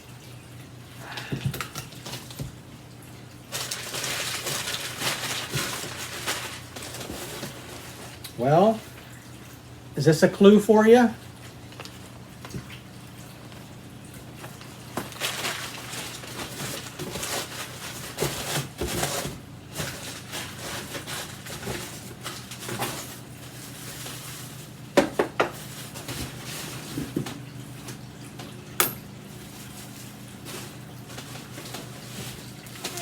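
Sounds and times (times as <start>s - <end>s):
handling rustling and clatter: 3.5s - 8.2s, 14.4s - 24.7s, 28.8s - 33.0s.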